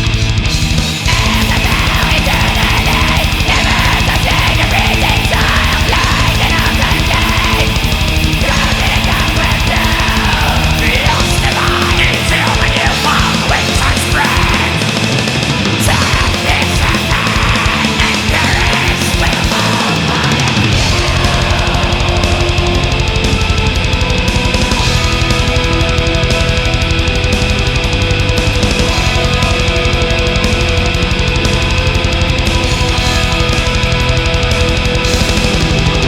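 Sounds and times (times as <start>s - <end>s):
distorted metal band: 0.0s - 36.0s
fast drumming: 0.0s - 36.0s.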